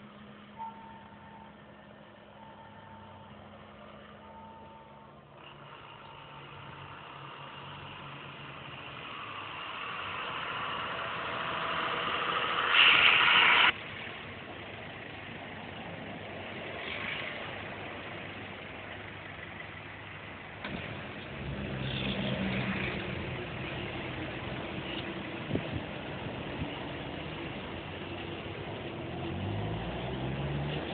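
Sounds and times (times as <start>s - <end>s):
vehicle engine and road noise: 0.0s - 30.9s
loud rush of noise: 9.1s - 13.8s.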